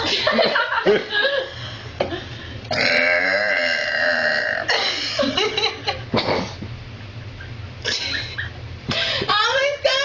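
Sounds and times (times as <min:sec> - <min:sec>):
girl belching: 0:02.7 - 0:04.8.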